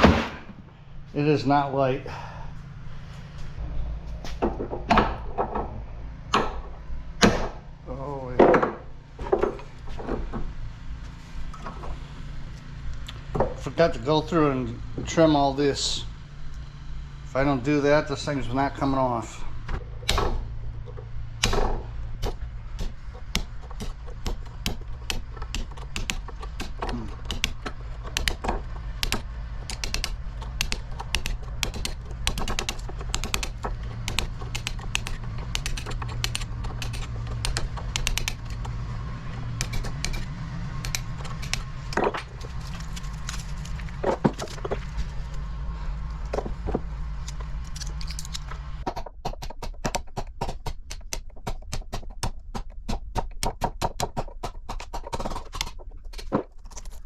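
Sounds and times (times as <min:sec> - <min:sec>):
steady low hum: 0:00.0 - 0:57.0
hand cutters snipping wire: 0:20.0 - 0:20.4, 0:21.4 - 0:45.0, 0:47.2 - 0:57.0.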